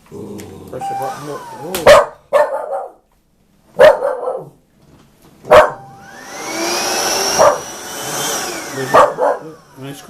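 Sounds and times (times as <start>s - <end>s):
vacuum cleaner motor whining: 0.4s - 2.1s, 5.5s - 10.0s
dog barking: 1.8s - 3.0s, 3.7s - 4.6s, 5.5s - 5.9s, 7.3s - 7.7s, 8.9s - 9.6s.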